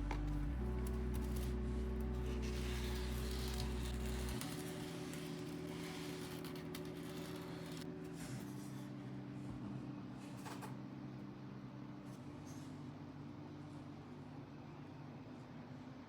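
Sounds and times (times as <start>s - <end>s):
faint background music chords: 0.0s - 4.6s.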